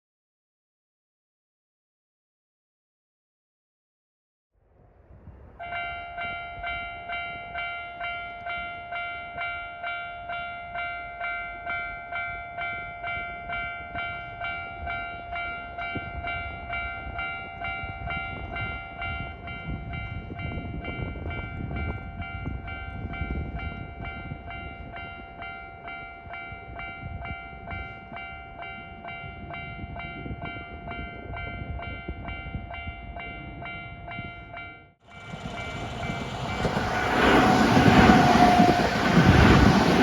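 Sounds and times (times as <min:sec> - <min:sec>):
level-crossing warning bell: 0:05.6 - 0:40.0
train wheels rumbling on rails: 0:35.0 - 0:40.0.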